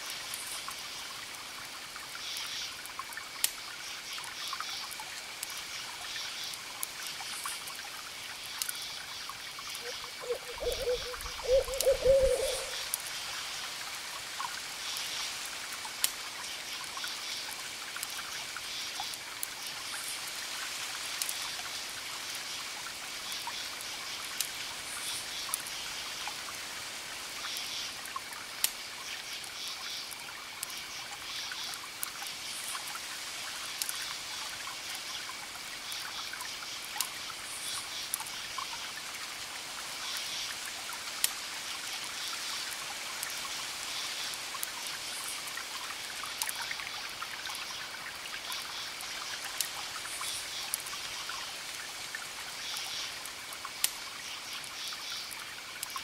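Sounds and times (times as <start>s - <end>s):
owl hooting: 9.8s - 12.8s.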